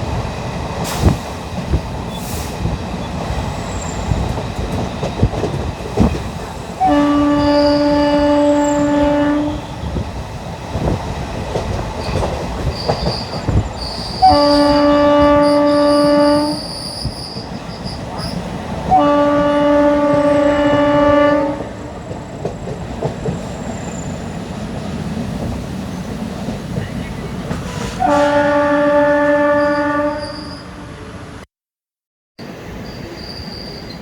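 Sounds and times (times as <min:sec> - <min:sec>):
train wheels clacking over rail joints: 0:04.0 - 0:06.6, 0:10.8 - 0:15.4
locomotive horn blasts: 0:06.8 - 0:09.8, 0:14.2 - 0:16.7, 0:18.9 - 0:22.0, 0:28.0 - 0:30.9.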